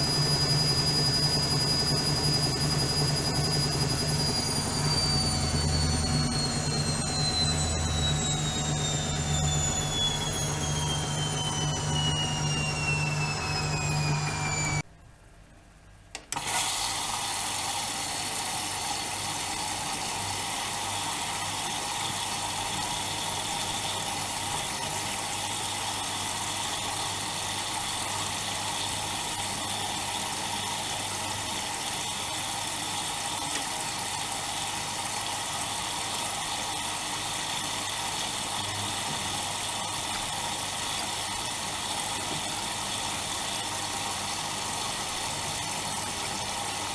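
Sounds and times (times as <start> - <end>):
low hum: 0.0 - 14.8
water rushing in washing machine: 0.0 - 14.8, 16.4 - 46.9.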